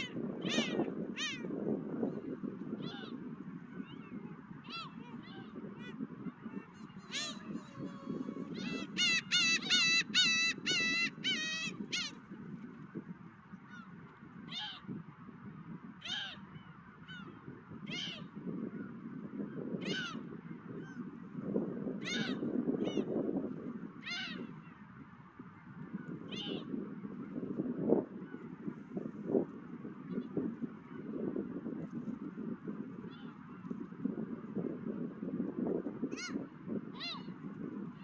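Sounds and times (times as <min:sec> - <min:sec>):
low rush of wind: 0:00.0 - 0:38.0
gulls calling: 0:02.8 - 0:12.2.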